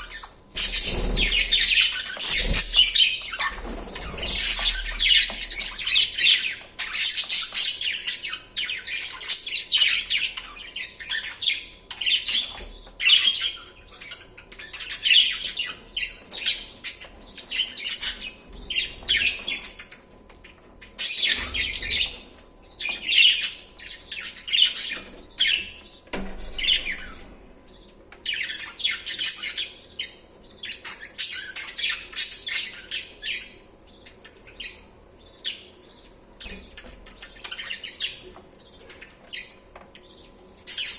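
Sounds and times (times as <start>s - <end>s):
budgerigars chirping: 0.0s - 40.9s.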